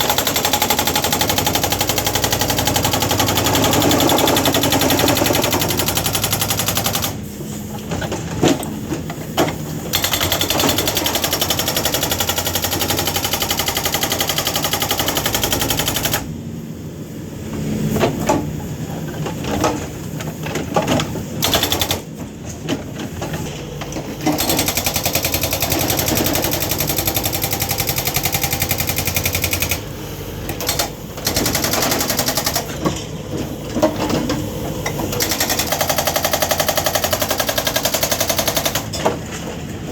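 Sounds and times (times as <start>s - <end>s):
hydraulic breaker hammer pounding: 0.0s - 7.2s, 9.4s - 16.3s, 24.0s - 29.8s, 30.5s - 33.0s, 33.7s - 39.3s.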